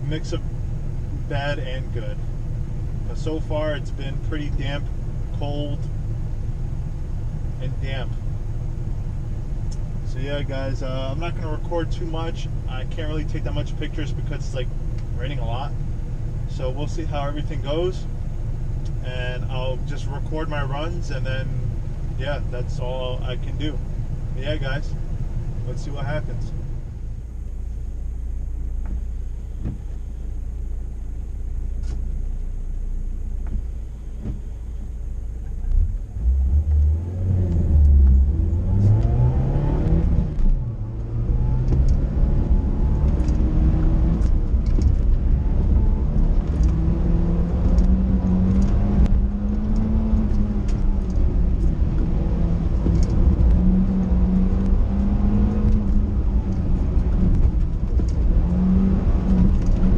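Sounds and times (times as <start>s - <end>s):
car engine revving: 33.3s - 59.9s.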